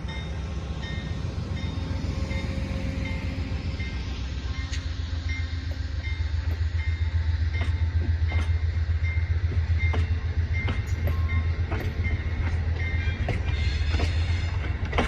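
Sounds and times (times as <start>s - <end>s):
passenger train rumbling past: 0.0s - 15.0s
wheels clicking over rail joints: 7.5s - 15.0s.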